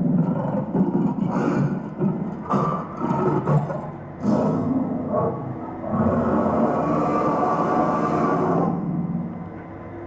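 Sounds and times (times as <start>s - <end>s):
rumbling roar from loudspeaker: 0.0s - 9.4s.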